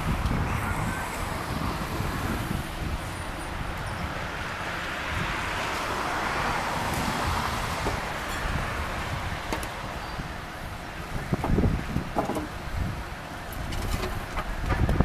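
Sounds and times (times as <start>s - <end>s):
vehicle passing: 0.0s - 10.8s
wind rumbling on microphone: 0.0s - 15.0s.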